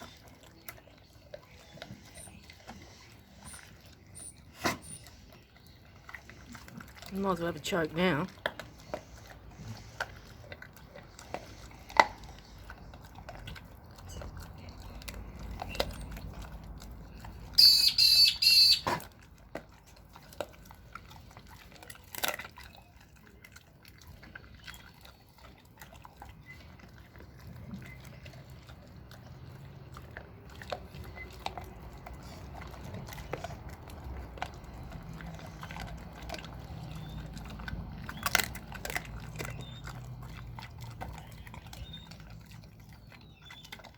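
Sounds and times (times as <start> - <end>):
dog chewing meat and bone: 0.0 - 43.9
high squawk-like call: 17.6 - 19.0.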